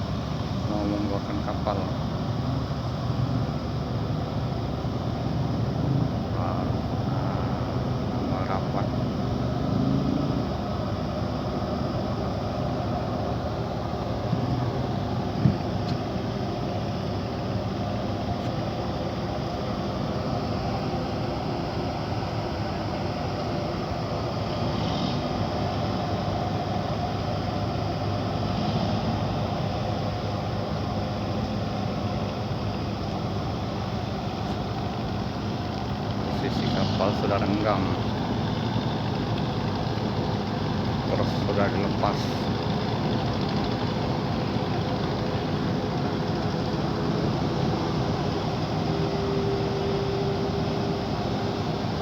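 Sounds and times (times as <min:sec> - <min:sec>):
ship engine drone: 0:00.0 - 0:52.0
steady hum: 0:00.0 - 0:52.0
ship engine rumbling: 0:29.0 - 0:52.0.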